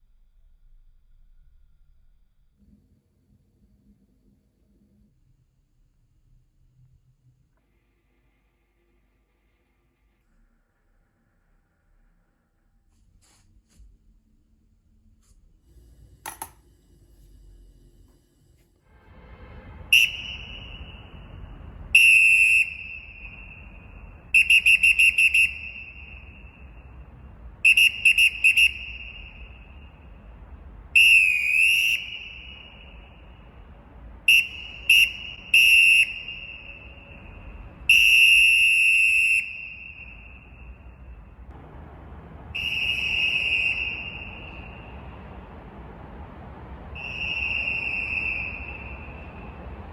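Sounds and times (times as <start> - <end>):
shrill pea whistle blasts: 19.9 - 26.8, 27.6 - 30.0, 31.0 - 33.4, 34.3 - 41.0, 42.6 - 45.1, 47.0 - 49.6.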